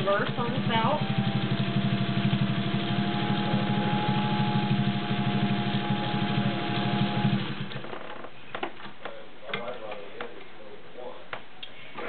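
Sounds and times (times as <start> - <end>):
sewing machine needle strokes: 0.0 - 7.8
sewing machine motor whine: 0.0 - 8.0.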